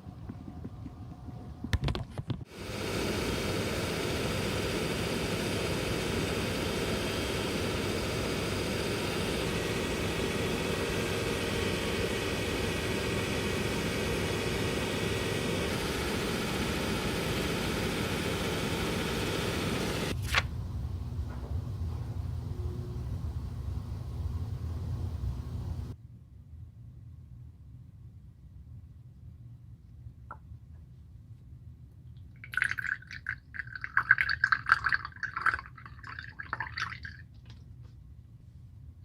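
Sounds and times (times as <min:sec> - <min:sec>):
workshop tool motor whirring: 0:02.5 - 0:20.2.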